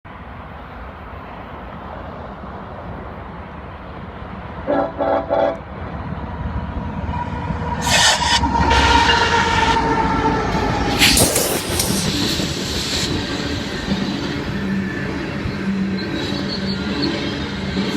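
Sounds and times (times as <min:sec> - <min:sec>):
train rumbling: 0:00.4 - 0:17.9
locomotive air horn blasts: 0:04.7 - 0:05.6.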